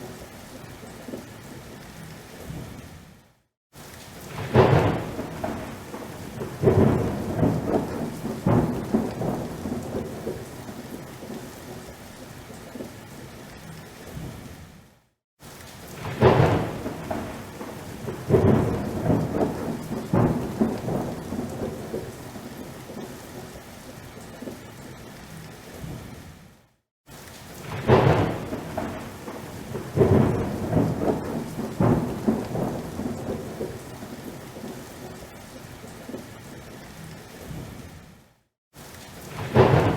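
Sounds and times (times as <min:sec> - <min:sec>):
steady rain: 0:00.0 - 0:39.9
rumbling thunderclaps: 0:04.2 - 0:11.4, 0:15.9 - 0:23.1, 0:27.6 - 0:34.8, 0:39.3 - 0:39.9.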